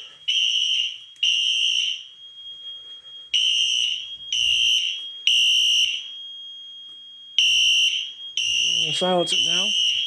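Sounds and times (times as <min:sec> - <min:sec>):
fire alarm horn blasts: 0:00.0 - 0:10.0
faint steady high tone: 0:01.9 - 0:03.4.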